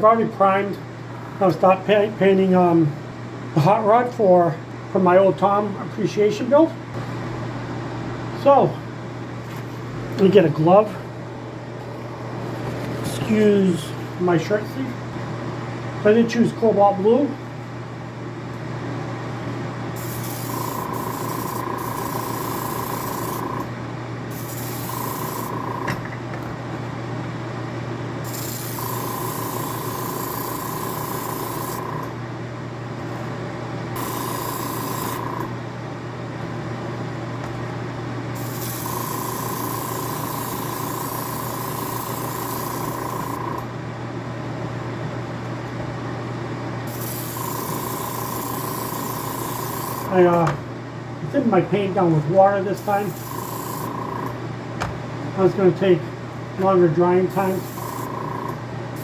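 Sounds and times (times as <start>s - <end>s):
steady low hum: 0.0s - 59.0s
airbrush spraying hiss: 20.0s - 23.5s, 24.3s - 25.6s, 28.3s - 31.8s, 38.4s - 43.4s, 46.9s - 50.1s, 52.8s - 54.0s, 57.3s - 58.3s.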